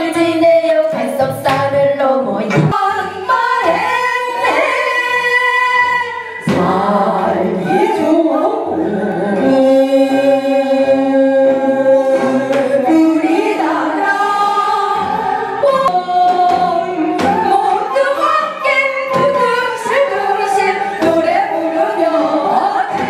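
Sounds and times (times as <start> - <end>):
women singing traditional song: 0.0 - 23.0.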